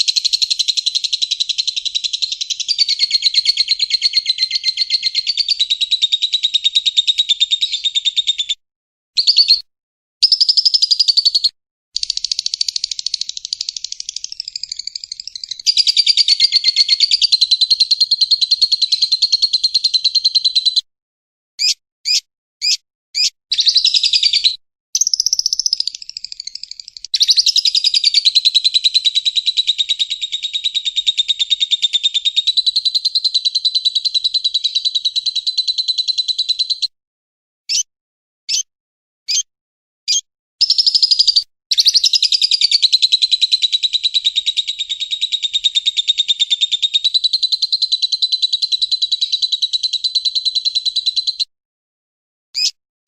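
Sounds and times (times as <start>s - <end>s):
bird chattering trill: 0.0s - 8.6s, 9.2s - 9.6s, 10.2s - 20.8s, 21.6s - 36.9s, 37.7s - 37.9s, 38.5s - 38.7s, 39.3s - 39.5s, 40.1s - 51.5s, 52.6s - 52.8s
short sharp bird chirps: 9.2s - 18.8s, 21.6s - 28.2s, 37.7s - 37.9s, 38.5s - 38.7s, 40.1s - 42.8s, 52.6s - 52.8s.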